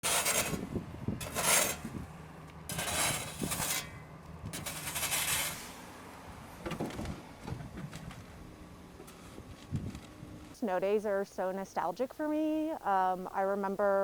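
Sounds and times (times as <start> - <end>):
scraping strokes: 0.0 - 2.0, 2.7 - 4.0, 4.6 - 5.9.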